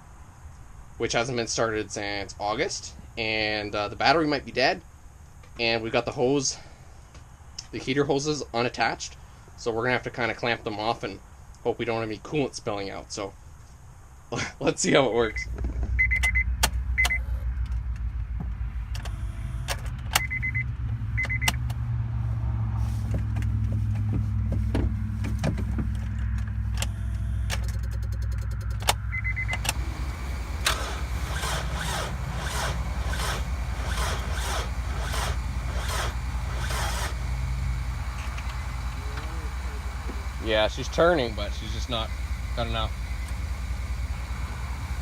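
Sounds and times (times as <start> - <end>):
car engine running: 15.2 - 45.0
high electronic beeps: 15.3 - 17.6, 19.1 - 21.6, 29.0 - 29.6
scattered clicks: 26.2 - 29.8.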